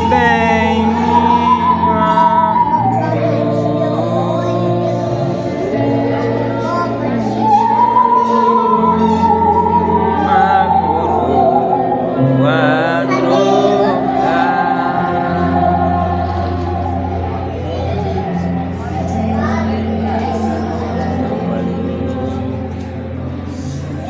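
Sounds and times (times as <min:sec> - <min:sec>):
musical saw playing hymn melody: 0:00.0 - 0:24.0
steady musical accompaniment: 0:00.0 - 0:24.0.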